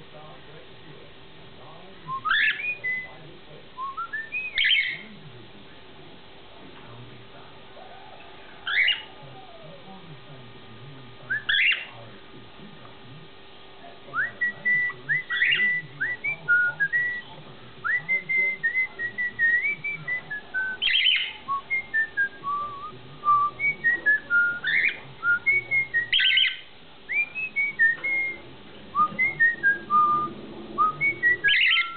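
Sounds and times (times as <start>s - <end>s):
cockatiel whistling: 2.1s - 3.1s, 3.8s - 5.0s, 8.6s - 9.1s, 11.3s - 11.9s, 14.1s - 28.4s, 29.0s - 31.9s.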